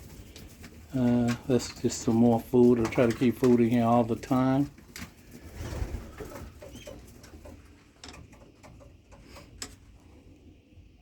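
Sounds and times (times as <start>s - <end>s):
pigeons cooing: 5.0s - 11.0s.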